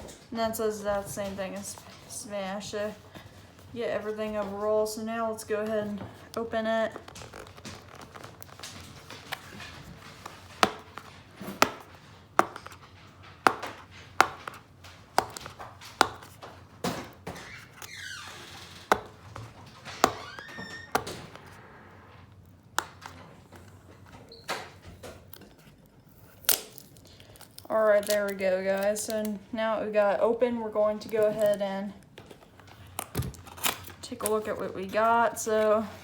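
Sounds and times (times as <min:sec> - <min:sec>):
box taps and clicks: 0:11.6 - 0:12.8.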